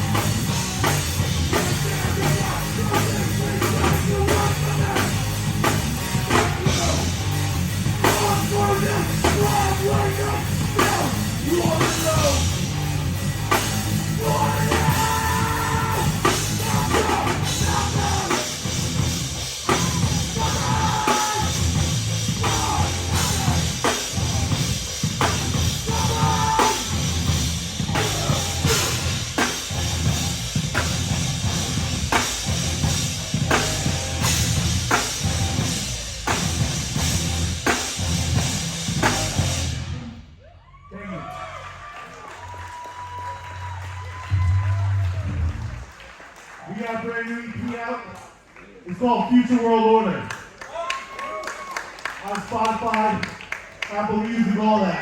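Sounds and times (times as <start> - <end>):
heavy rock band playing live: 0.0 - 40.1
drum kit: 0.0 - 40.2.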